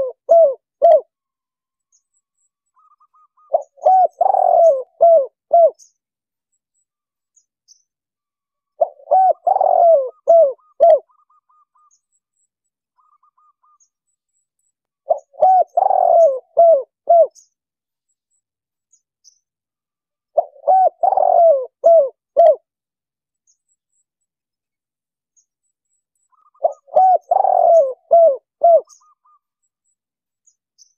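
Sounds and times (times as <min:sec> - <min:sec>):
dove cooing: 0:00.0 - 0:01.1, 0:02.8 - 0:05.8, 0:08.8 - 0:11.9, 0:15.0 - 0:17.4, 0:20.4 - 0:22.7, 0:26.4 - 0:29.4.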